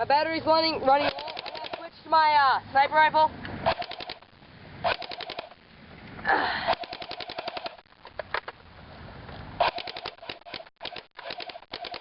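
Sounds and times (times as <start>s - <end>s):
airsoft gun firing bursts: 1.0s - 1.9s, 3.7s - 4.3s, 4.9s - 5.6s, 6.7s - 7.8s, 9.6s - 12.0s.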